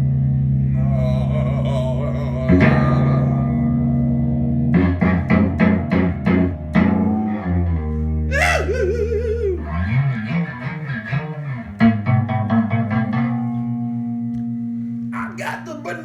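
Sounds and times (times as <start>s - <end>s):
blues guitar strumming: 2.5s - 16.0s
guitar note bending: 2.5s - 16.0s.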